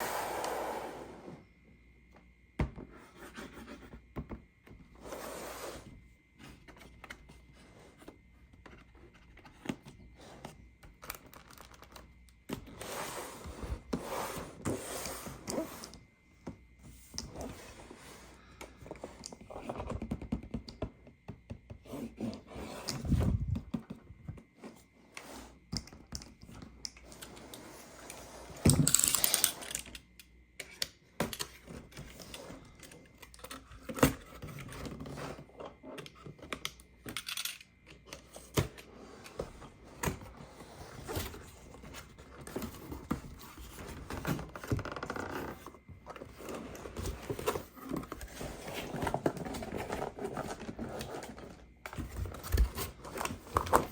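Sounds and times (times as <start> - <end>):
plastic parts clicking and scraping: 25.8 - 53.9.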